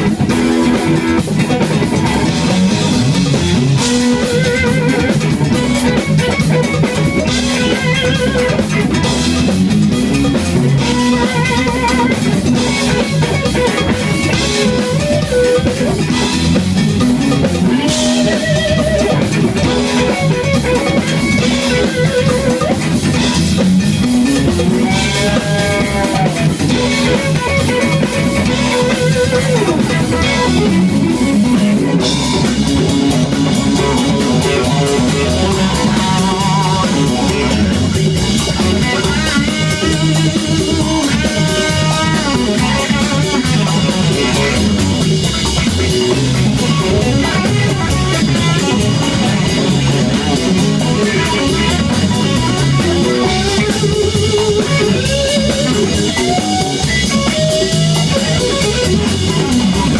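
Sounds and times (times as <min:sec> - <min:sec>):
bass guitar: 0:00.0 - 0:59.9
drum kit: 0:00.0 - 0:59.9
electric guitar with bent notes: 0:00.0 - 0:59.9.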